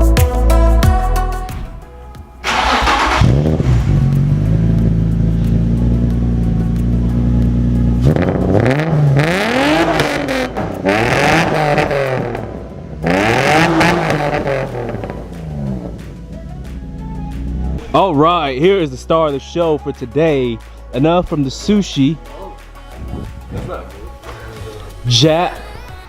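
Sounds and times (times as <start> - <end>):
car engine revving: 2.4 - 18.4.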